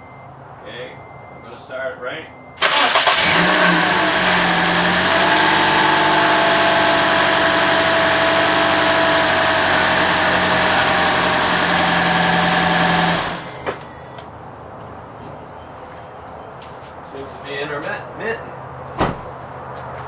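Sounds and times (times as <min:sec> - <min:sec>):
car engine idling: 0:02.6 - 0:14.2.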